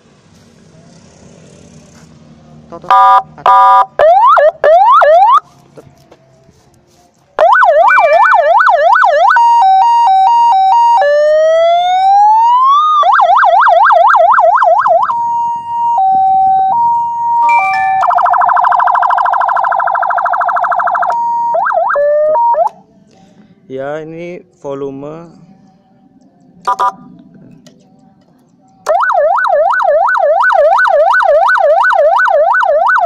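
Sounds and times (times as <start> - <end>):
electronic vehicle siren: 2.8 - 5.4, 7.4 - 22.8, 26.6 - 27.1, 28.8 - 33.0.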